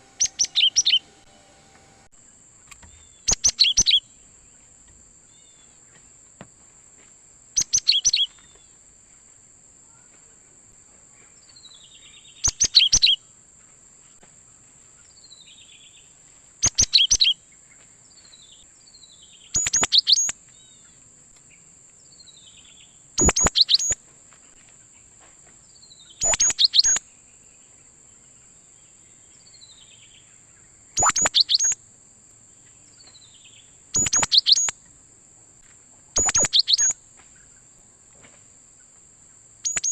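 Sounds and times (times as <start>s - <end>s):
bird whistling song: 0.0s - 1.8s, 3.0s - 4.0s, 7.6s - 8.5s, 11.9s - 13.2s, 16.6s - 17.4s, 19.0s - 20.4s, 23.2s - 24.0s, 25.9s - 27.0s, 31.0s - 31.8s, 33.2s - 34.8s, 36.2s - 37.0s, 39.6s - 39.9s.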